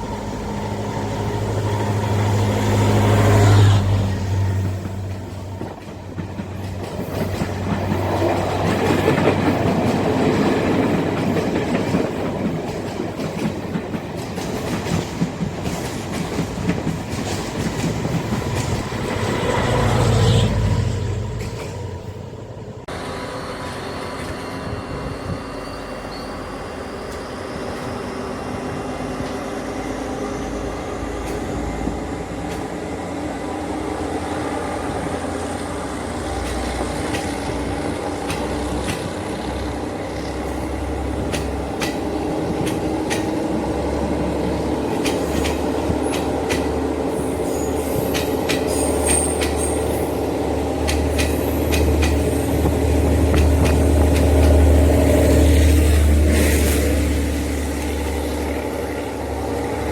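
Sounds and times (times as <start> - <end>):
train engine drone: 0.0 - 59.9
wheels clicking on rails: 36.2 - 59.9.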